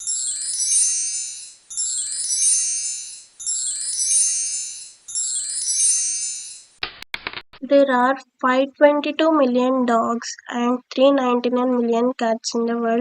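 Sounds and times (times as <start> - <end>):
high chime-like jingle: 0.0 - 6.8.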